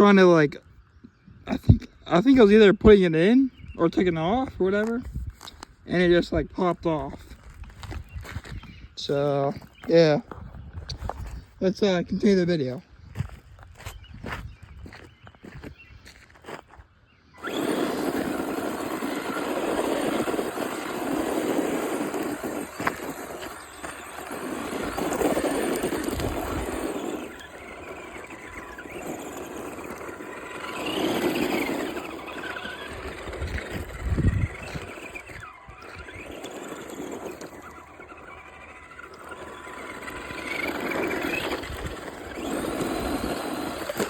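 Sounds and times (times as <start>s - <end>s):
toy car motor whining: 17.3s - 44.0s
tyres skidding over ground: 17.4s - 44.0s.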